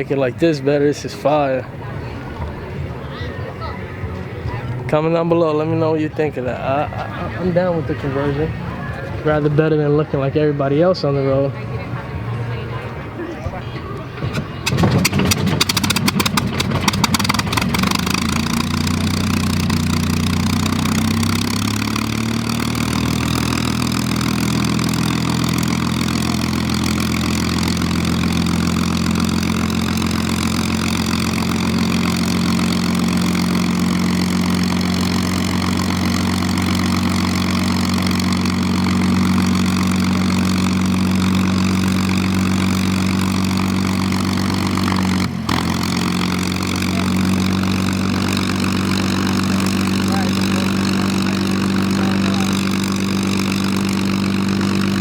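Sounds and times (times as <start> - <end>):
piston engine starting and idling: 14.0 - 55.0.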